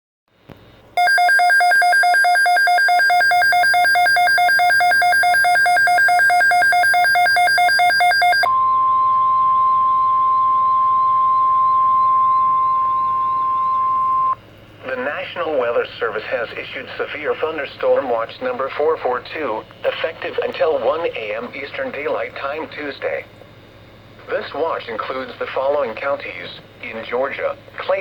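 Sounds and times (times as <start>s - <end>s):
warbling electronic alert tone: 1.0s - 8.5s
steady warning alarm tone: 1.0s - 14.4s.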